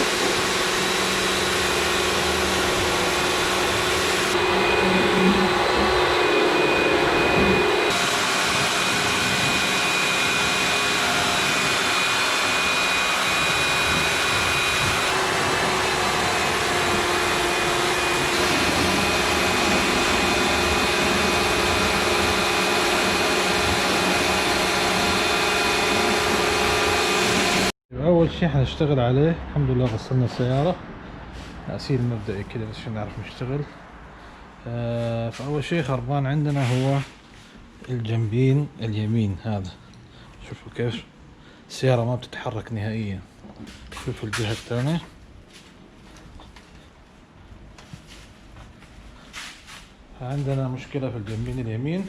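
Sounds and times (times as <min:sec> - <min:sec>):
small electric motor whining: 0:00.0 - 0:27.7.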